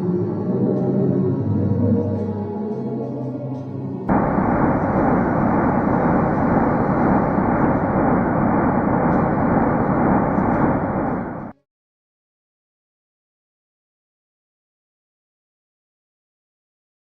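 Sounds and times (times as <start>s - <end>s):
dense rushing rumble: 4.1s - 11.6s.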